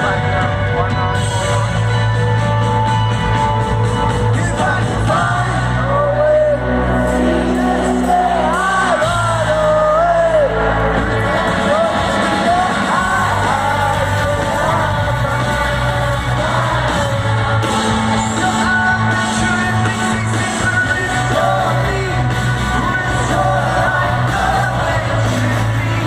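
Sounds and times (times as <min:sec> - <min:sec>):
live rock band playing: 0:00.0 - 0:26.0
lead singer singing: 0:03.9 - 0:26.0.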